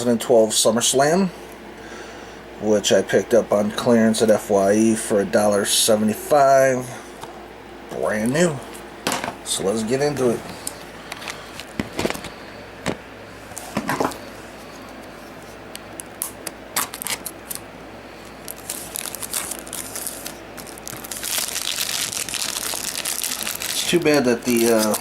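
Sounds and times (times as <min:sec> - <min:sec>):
plastic shrink wrap crinkling: 0:18.2 - 0:25.0.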